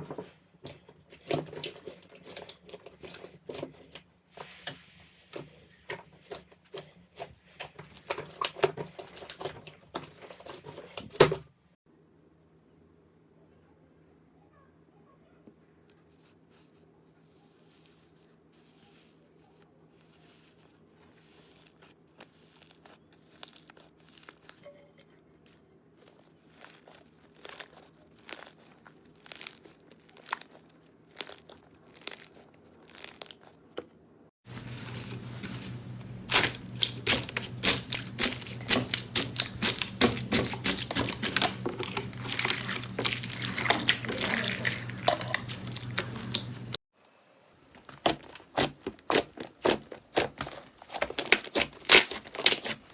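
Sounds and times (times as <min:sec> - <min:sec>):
slime crackling and popping: 0:21.2 - 0:24.7, 0:25.5 - 0:33.8, 0:35.2 - 0:46.8, 0:47.8 - 0:52.9.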